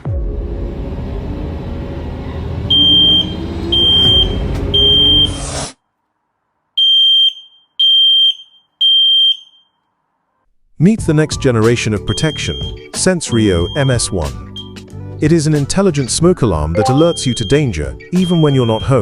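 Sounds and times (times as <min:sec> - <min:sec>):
low rumbling background: 0:00.1 - 0:05.3
smoke alarm beeping: 0:02.7 - 0:05.5, 0:06.8 - 0:09.8, 0:12.1 - 0:14.8, 0:16.8 - 0:19.0.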